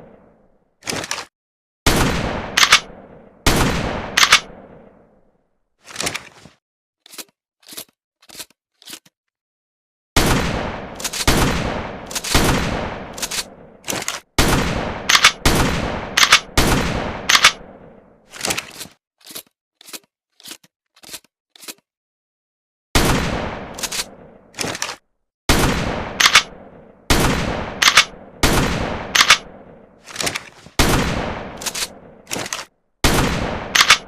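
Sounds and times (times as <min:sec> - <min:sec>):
shotgun blasts: 0:01.9 - 0:04.9, 0:10.2 - 0:13.8, 0:14.4 - 0:17.9, 0:23.0 - 0:24.4, 0:25.5 - 0:29.8, 0:30.8 - 0:32.2, 0:33.0 - 0:34.0
shotgun pump slide clacking: 0:26.2 - 0:26.5, 0:29.2 - 0:29.4, 0:33.8 - 0:34.0.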